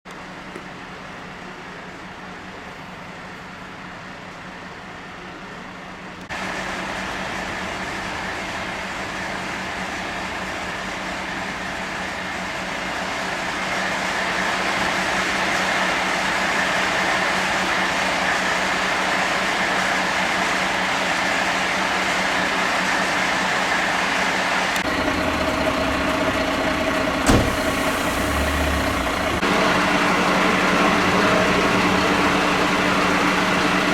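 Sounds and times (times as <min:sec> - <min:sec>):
fire engines idling: 0:00.1 - 0:33.9
street noise: 0:00.1 - 0:33.9
sharp knock: 0:27.3 - 0:27.7.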